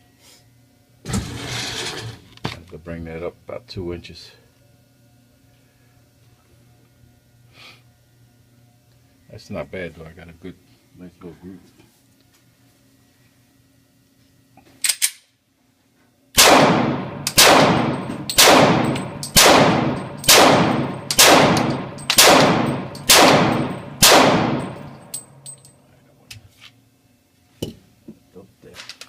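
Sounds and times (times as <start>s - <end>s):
gunshots: 16.4s - 24.9s.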